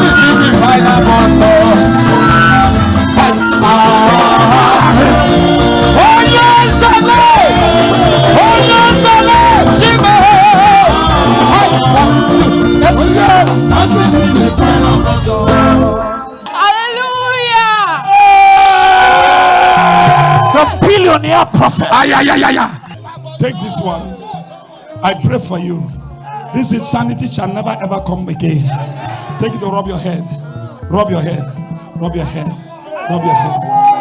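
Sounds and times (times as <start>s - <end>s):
driving drum beat: 0.0s - 15.9s
person singing: 0.0s - 16.4s, 21.9s - 22.9s
upbeat music: 0.0s - 18.1s, 19.1s - 34.0s.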